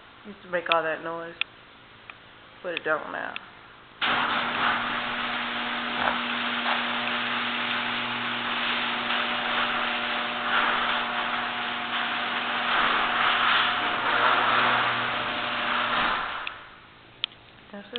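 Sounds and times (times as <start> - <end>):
garage door opener running: 4.0 - 16.9.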